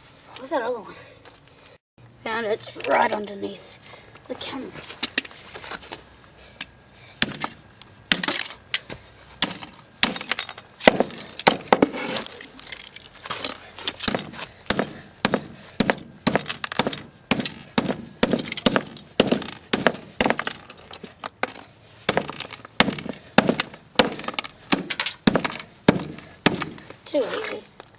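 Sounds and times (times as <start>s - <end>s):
toy car smashed and cracking: 7.3s - 8.6s.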